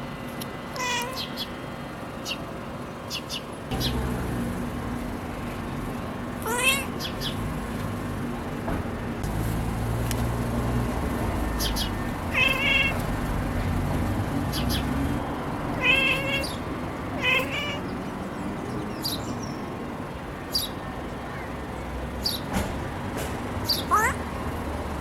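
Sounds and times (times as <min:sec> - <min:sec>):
cat chirping: 0:00.8 - 0:01.5, 0:06.4 - 0:07.4, 0:11.6 - 0:13.0, 0:15.8 - 0:16.6, 0:17.2 - 0:17.9, 0:23.7 - 0:24.2.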